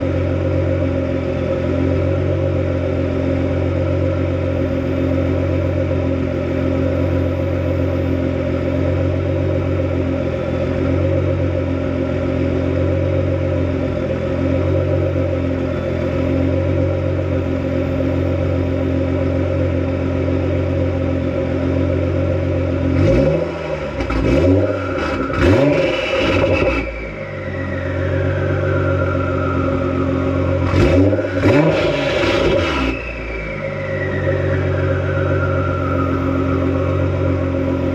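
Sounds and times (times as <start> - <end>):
car engine idling and revving: 0.0 - 37.9
turbo whistle: 24.7 - 37.9.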